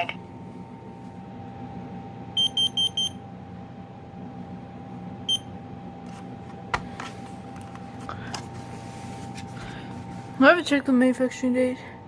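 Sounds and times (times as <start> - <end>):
smoke alarm high beeps: 2.4 - 3.2.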